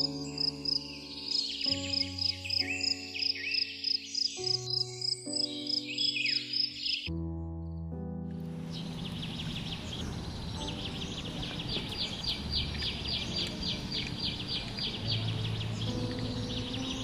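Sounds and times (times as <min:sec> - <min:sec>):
steady outdoor hiss: 0:08.3 - 0:17.0.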